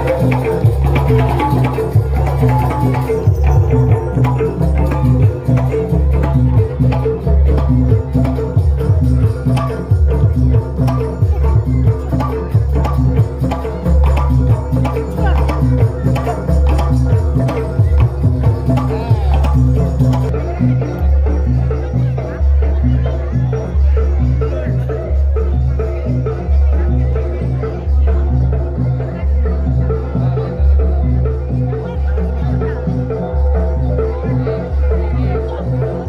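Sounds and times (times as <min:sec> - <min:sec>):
fast hand drum strokes: 0:00.0 - 0:21.6
gamelan with sustained low notes: 0:00.0 - 0:36.0.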